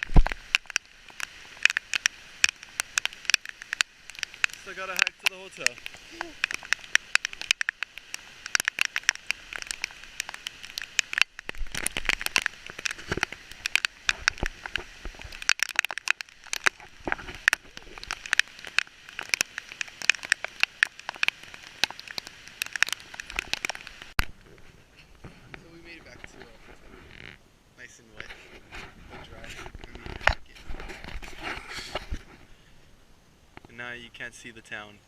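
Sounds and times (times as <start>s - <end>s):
heavy rain: 0.0s - 24.3s
raindrops ticking on microphone: 0.0s - 32.6s, 33.2s - 35.0s.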